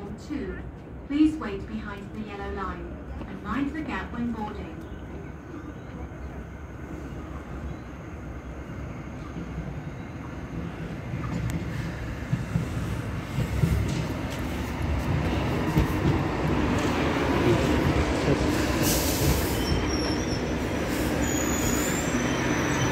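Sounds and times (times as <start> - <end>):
train wheels rumbling on track: 0.0 - 22.9
high wheel squeal: 19.0 - 22.9.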